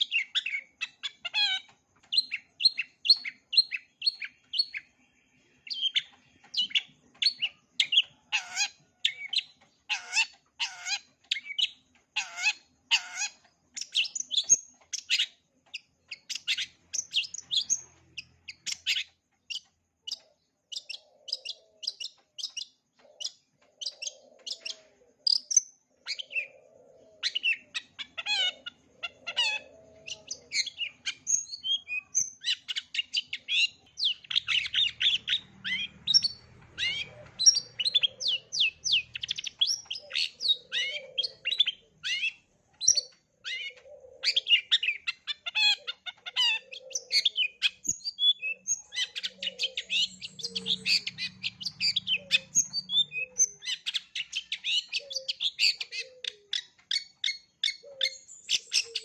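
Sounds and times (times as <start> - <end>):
bird singing sharp chirps: 0.0 - 59.0.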